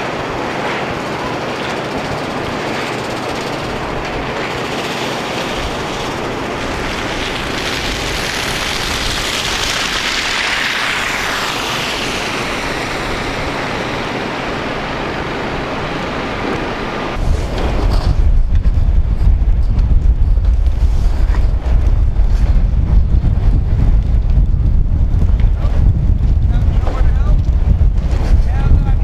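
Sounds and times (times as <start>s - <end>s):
rushing street traffic: 0.0s - 20.0s.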